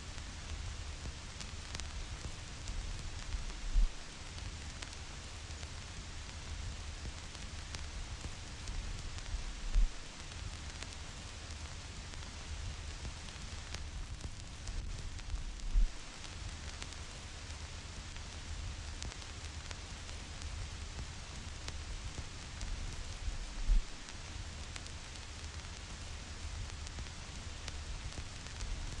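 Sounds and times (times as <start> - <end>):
vinyl record crackle: 0.0 - 29.0
low rumble: 3.3 - 4.0, 9.0 - 10.0, 14.8 - 16.0, 22.7 - 24.1
low thumps: 3.3 - 4.0, 9.4 - 10.0, 23.2 - 24.0.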